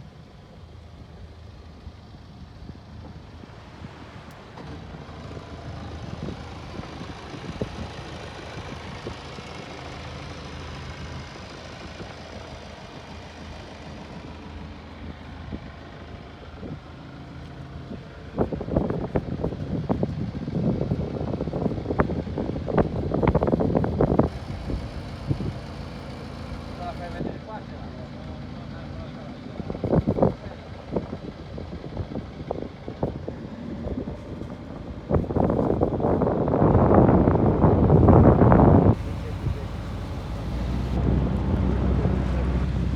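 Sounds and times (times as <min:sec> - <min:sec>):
motorboat engine running: 0:00.0 - 0:42.9
wind noise: 0:17.9 - 0:25.9, 0:29.7 - 0:42.9.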